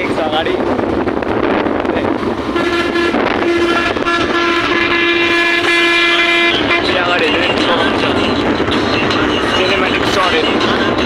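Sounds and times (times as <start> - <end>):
road and wind noise: 0.0 - 11.0
vehicle horn honking: 2.5 - 8.4.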